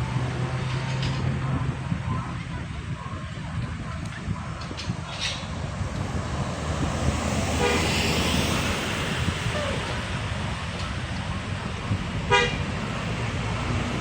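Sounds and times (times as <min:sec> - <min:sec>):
passing traffic rumble: 0:00.0 - 0:14.0
bus horn toot: 0:07.4 - 0:09.1, 0:12.2 - 0:12.9.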